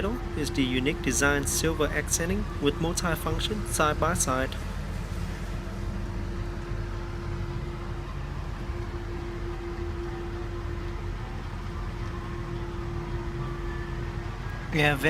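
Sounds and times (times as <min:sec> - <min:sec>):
car mechanical hum and hiss: 0:00.0 - 0:15.0
constant mid-pitched tone: 0:00.0 - 0:15.0.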